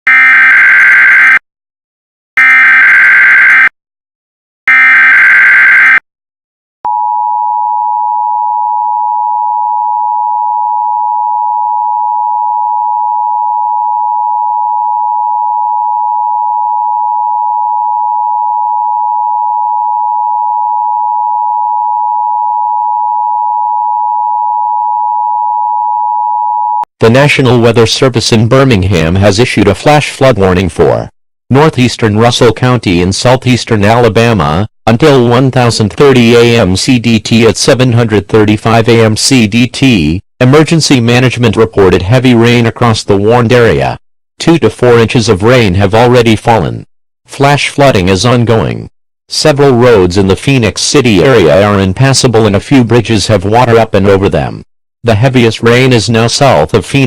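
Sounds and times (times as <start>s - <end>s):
two-tone attention signal: 4.7s - 6.0s.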